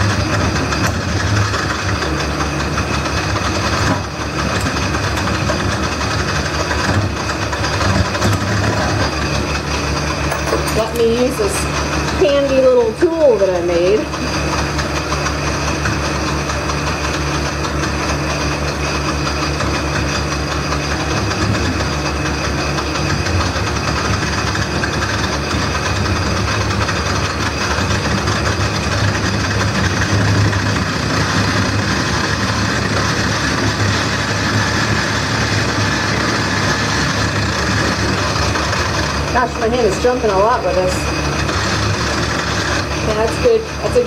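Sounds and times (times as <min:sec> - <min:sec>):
lathe motor humming: 0:00.0 - 0:44.0
turning tool scraping wood: 0:00.0 - 0:44.0.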